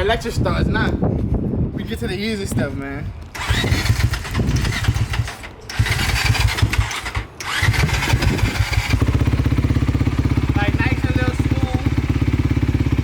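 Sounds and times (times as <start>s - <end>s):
electric starter cranking engine: 3.3s - 9.1s
engine idling: 3.4s - 13.0s.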